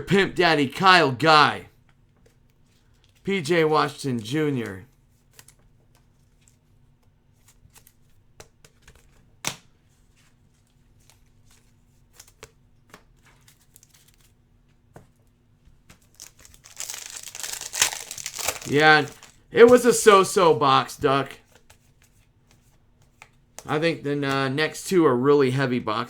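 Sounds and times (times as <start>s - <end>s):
trading cards flipped by hand: 5.2s - 15.2s.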